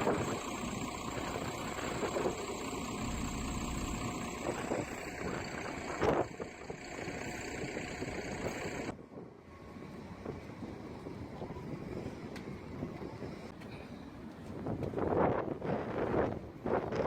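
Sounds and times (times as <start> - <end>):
vehicle engine running: 0.0 - 9.0
street noise: 0.0 - 17.0.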